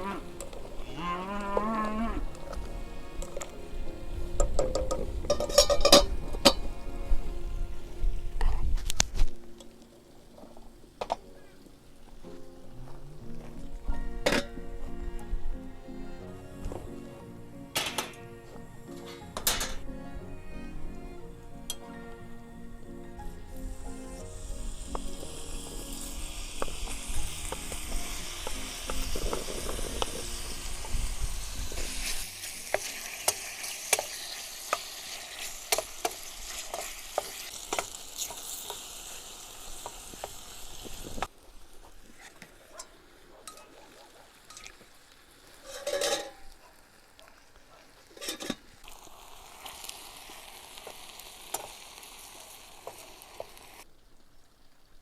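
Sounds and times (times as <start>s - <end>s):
food sizzling in a pan: 0.0s - 55.0s
utensil scraping a pan: 0.1s - 7.2s, 26.6s - 38.9s, 45.5s - 46.6s.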